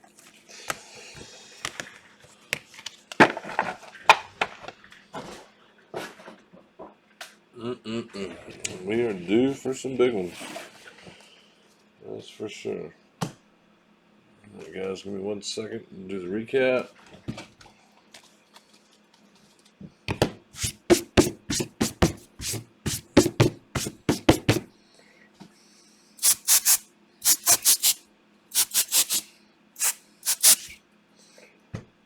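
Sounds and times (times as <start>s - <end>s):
cards tapping on tabletop: 20.1s - 24.7s.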